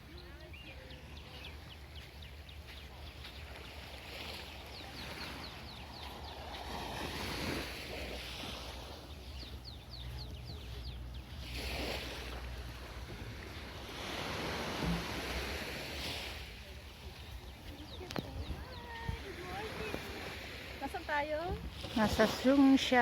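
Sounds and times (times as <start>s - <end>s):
surf washing on beach: 0.0s - 23.0s
wind on microphone: 3.6s - 23.0s.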